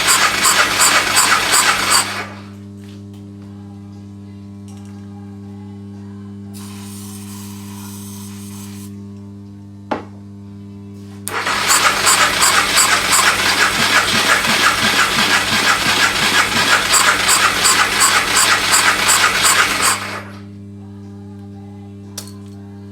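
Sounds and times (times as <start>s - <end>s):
motorcycle engine cranking: 0.0s - 2.5s, 11.3s - 20.4s.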